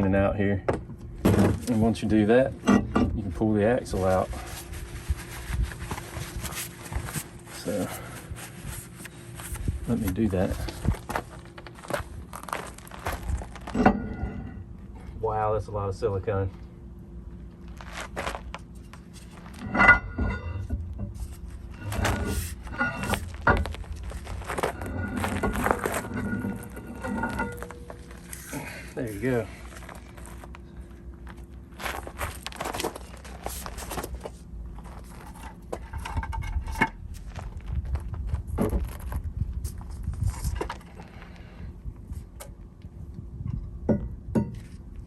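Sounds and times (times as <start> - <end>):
metal clunks and knocks: 2.6 - 3.2, 19.6 - 21.2
metal scraping: 17.7 - 30.8
metal tools clinking and knocking: 24.5 - 28.4.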